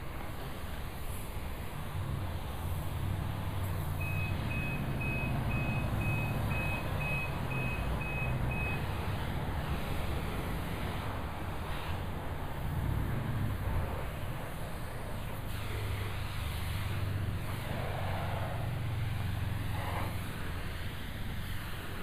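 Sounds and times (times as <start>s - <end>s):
vehicle engine rumbling: 1.6s - 22.0s
short high electronic beeps: 4.0s - 8.8s.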